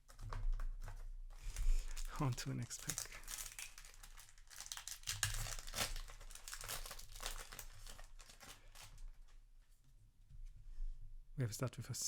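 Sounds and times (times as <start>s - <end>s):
foil wrapper crinkling and tearing: 1.4s - 9.3s.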